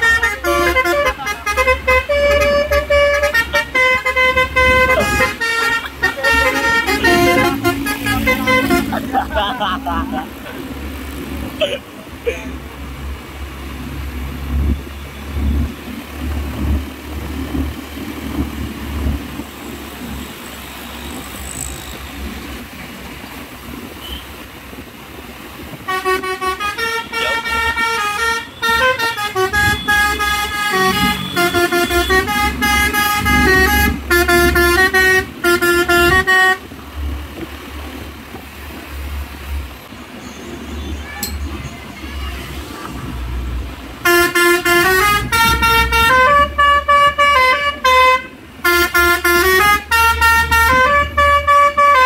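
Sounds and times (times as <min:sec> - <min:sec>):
musical truck horn: 0:00.0 - 0:09.2, 0:25.8 - 0:36.7, 0:44.0 - 0:52.0.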